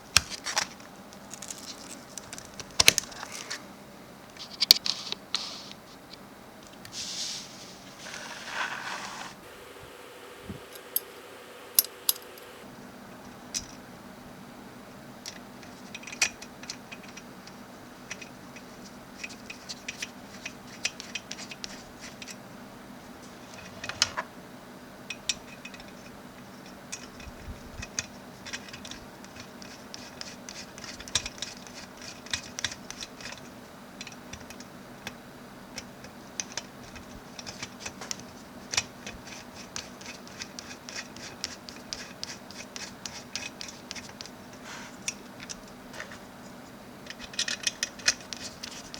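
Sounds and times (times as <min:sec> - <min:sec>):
faint steady hum: 0:00.0 - 0:48.9
hands handling small computer parts: 0:00.1 - 0:03.6, 0:36.4 - 0:48.9.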